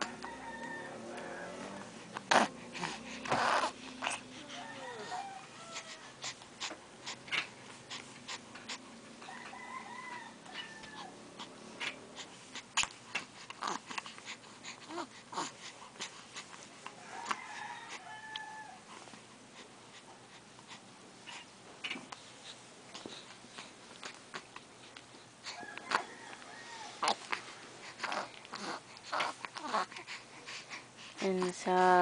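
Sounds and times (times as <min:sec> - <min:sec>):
animal whining: 0:00.0 - 0:08.0, 0:08.6 - 0:12.2.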